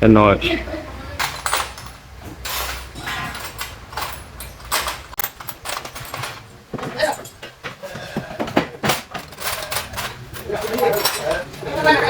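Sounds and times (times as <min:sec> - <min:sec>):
metal parts clinking and rattling: 0:01.2 - 0:07.7, 0:08.4 - 0:12.0.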